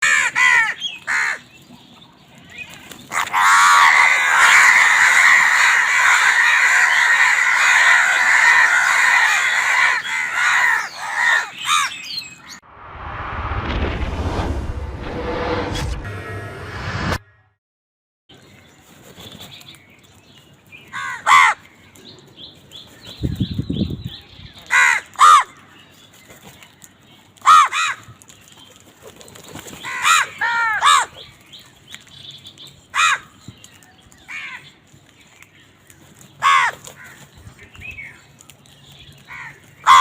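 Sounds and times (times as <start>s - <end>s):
crows cawing: 0.0s - 1.5s, 3.1s - 12.1s, 20.9s - 21.7s, 24.7s - 25.7s, 27.4s - 28.2s, 29.8s - 31.2s, 32.9s - 33.4s, 34.3s - 34.8s, 36.4s - 37.4s, 39.3s - 40.0s
small birds chirping: 0.5s - 3.4s, 5.9s - 12.6s, 18.3s - 40.0s
short low rumble: 12.6s - 17.5s.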